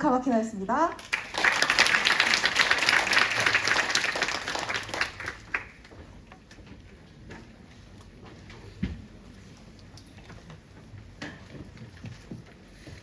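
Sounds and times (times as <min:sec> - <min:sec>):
audience applauding: 0:01.0 - 0:05.9.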